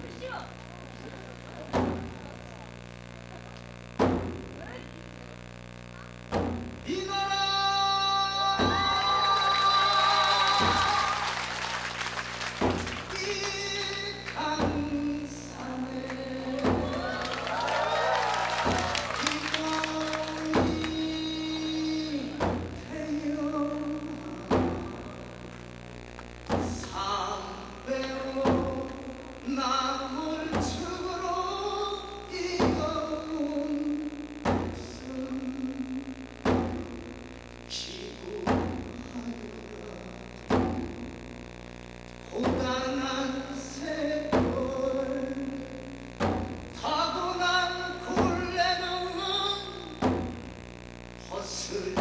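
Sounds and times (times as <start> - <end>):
drum beats: 1.3 - 2.7, 3.3 - 4.8, 6.1 - 35.4, 36.2 - 39.4, 40.2 - 52.0
man singing: 6.8 - 11.5, 13.0 - 17.3, 18.6 - 25.4, 26.6 - 41.2, 42.2 - 50.1, 51.2 - 52.0.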